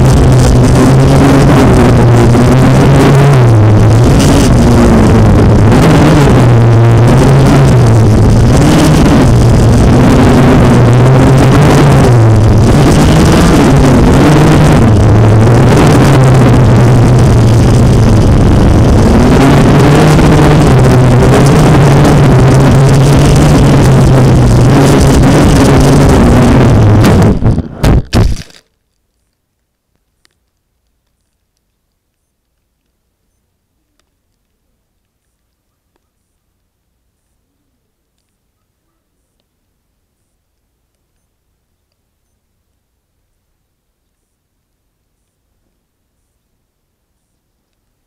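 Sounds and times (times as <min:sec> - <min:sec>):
drone motors buzzing: 0:00.0 - 0:28.6.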